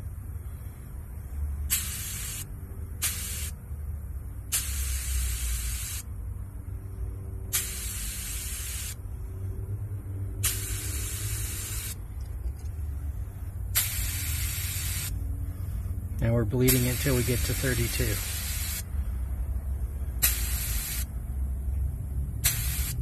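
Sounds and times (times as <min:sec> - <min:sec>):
air hissing out of tire: 0:01.6 - 0:03.6, 0:04.5 - 0:06.1, 0:07.5 - 0:09.0, 0:10.4 - 0:12.0, 0:13.1 - 0:15.9, 0:16.6 - 0:19.0, 0:20.1 - 0:21.2, 0:22.4 - 0:23.0.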